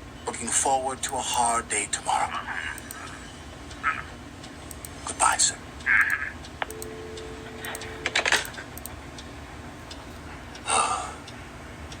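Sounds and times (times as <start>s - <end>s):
two-note dial tone: 6.7s - 8.5s
telephone handset clicking: 7.6s - 8.6s.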